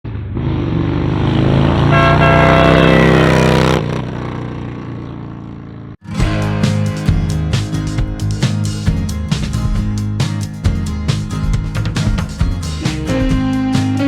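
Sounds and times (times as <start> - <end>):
motorcycle air horn blast: 1.9 - 3.4.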